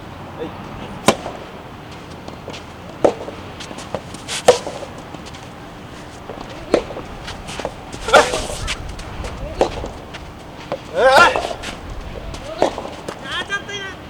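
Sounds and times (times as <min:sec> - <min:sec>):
tennis ball struck by rackets: 0:00.9 - 0:01.6, 0:02.2 - 0:13.4
wind noise: 0:05.3 - 0:13.6.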